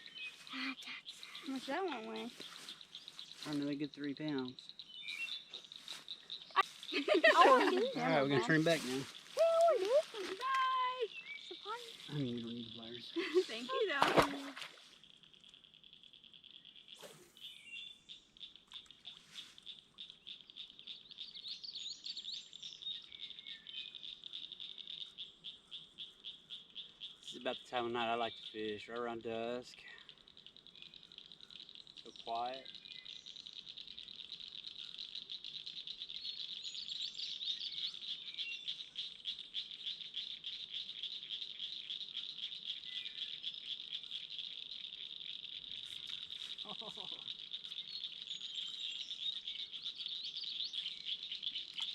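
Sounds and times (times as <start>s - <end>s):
bird chirps: 0.0s - 51.9s
frogs and insects trilling: 0.0s - 51.9s
short bird chirps: 4.4s - 7.0s, 14.7s - 24.0s.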